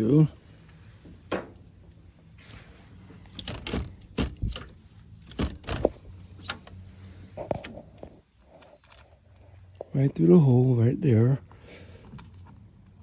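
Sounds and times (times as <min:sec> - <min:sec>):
metal hardware clicking and rattling: 0:03.2 - 0:06.8.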